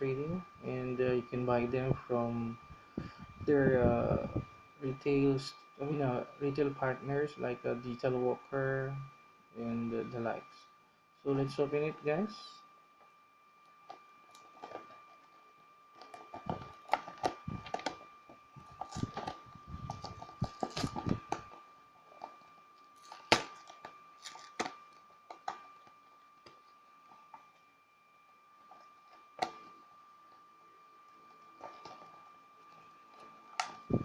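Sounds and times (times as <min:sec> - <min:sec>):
faint high whine: 0:00.0 - 0:34.0
packaging clicks and rustling: 0:23.0 - 0:26.6.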